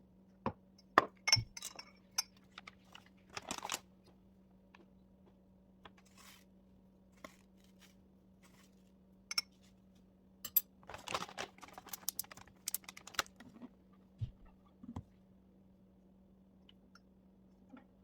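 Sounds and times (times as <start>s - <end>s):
rustling and tearing: 3.3s - 3.8s, 10.9s - 13.5s.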